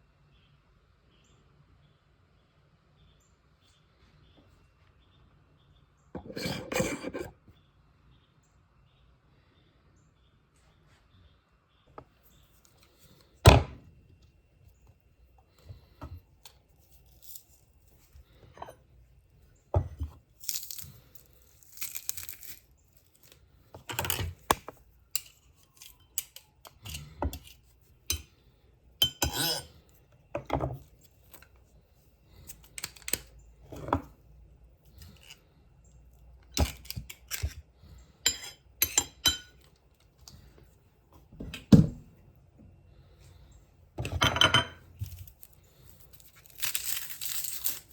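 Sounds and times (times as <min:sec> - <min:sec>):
utensils and dishes clinking: 0:38.3 - 0:39.7, 0:44.0 - 0:45.0.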